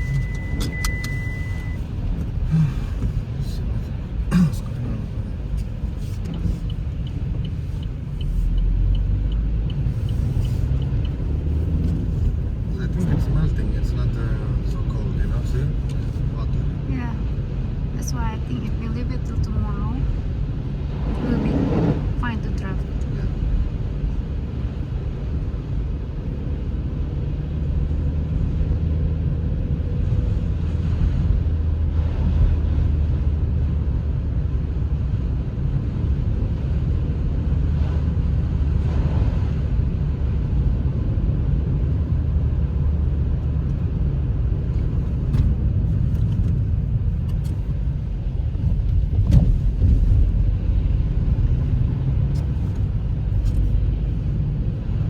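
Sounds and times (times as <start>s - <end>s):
car engine idling: 0.0s - 24.9s.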